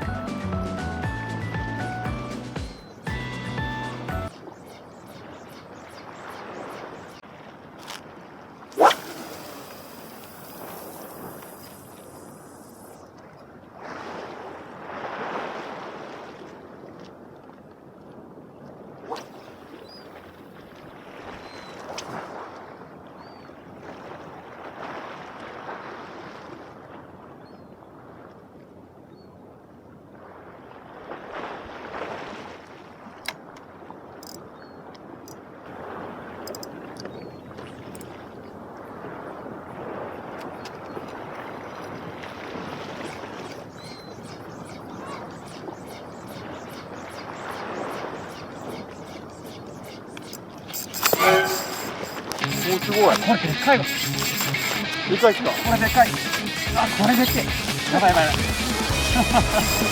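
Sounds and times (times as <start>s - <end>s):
sea water washing against breakwater: 4.4s - 13.0s.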